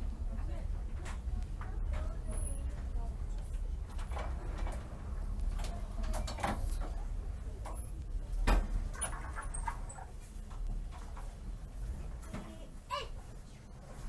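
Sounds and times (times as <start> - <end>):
train carriage low rumble: 0.0 - 14.0.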